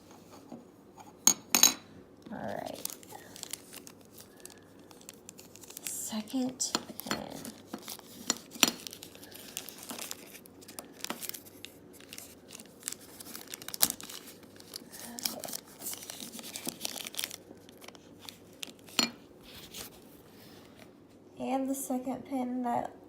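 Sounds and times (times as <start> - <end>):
packaging crinkling and tearing: 2.3 - 20.2.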